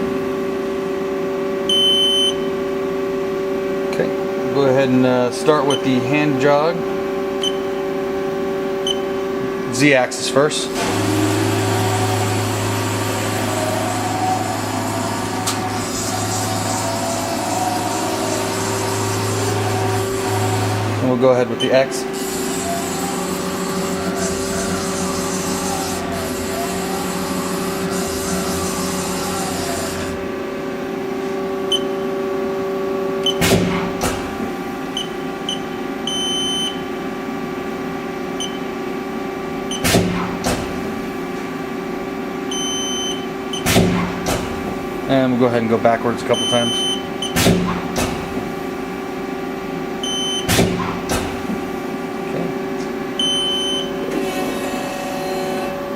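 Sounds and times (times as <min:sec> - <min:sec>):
machine hum: 0:00.0 - 0:55.9
short high beeps: 0:01.7 - 0:02.5
lathe humming: 0:03.9 - 0:31.7.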